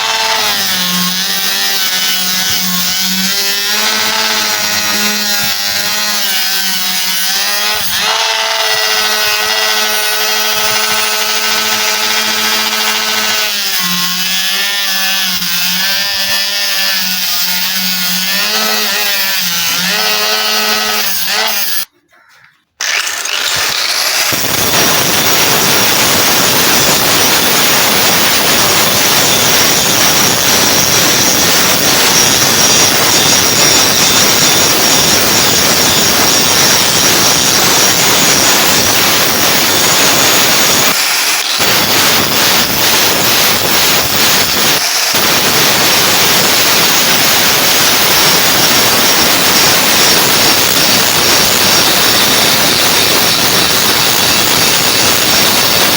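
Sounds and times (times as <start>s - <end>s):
power tool motor whine: 22.8s - 55.9s.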